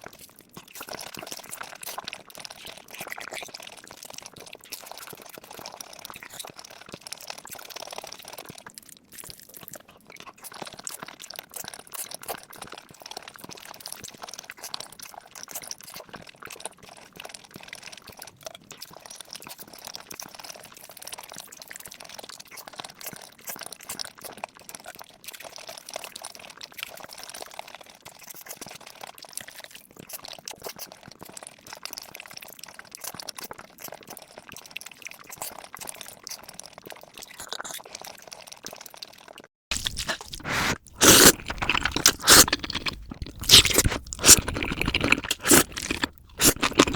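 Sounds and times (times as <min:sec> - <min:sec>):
chewing with mouth clicks and crunches: 0:37.2 - 0:37.9, 0:39.7 - 0:46.9.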